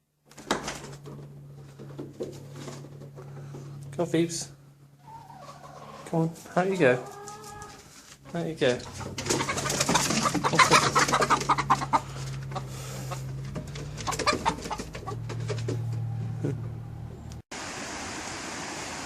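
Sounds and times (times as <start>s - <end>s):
steady low hum: 0.7s - 5.1s, 7.8s - 14.1s
chickens squawking and clucking: 4.5s - 17.4s.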